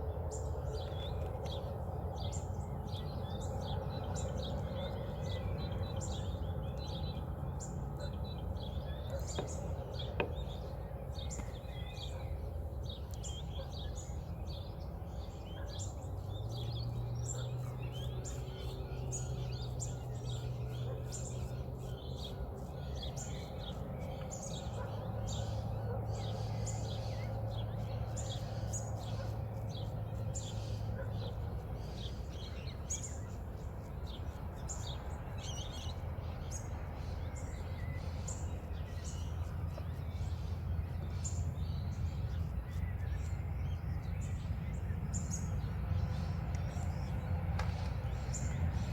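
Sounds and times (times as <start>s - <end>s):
birds chirping and calling: 0.0s - 48.9s.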